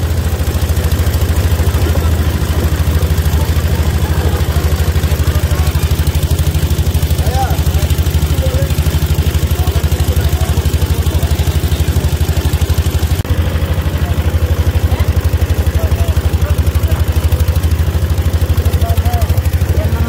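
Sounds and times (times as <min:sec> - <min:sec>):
boat engine thudding: 0:00.0 - 0:20.0.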